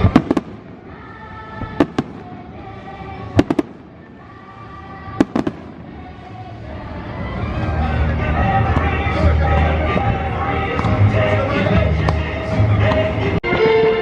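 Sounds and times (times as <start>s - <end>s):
distant fireworks bangs: 0.0s - 4.3s, 5.0s - 6.3s.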